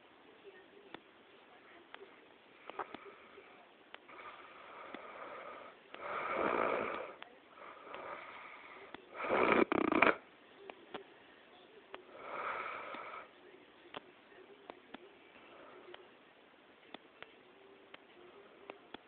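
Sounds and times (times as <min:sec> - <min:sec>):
soft breath: 0:02.5 - 0:09.7, 0:11.2 - 0:13.5, 0:15.3 - 0:16.2
person snoring loudly: 0:09.2 - 0:10.2.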